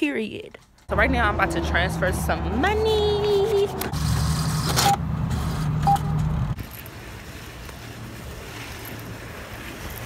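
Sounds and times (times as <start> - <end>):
electronic keypad beeps: 5.8 - 6.2.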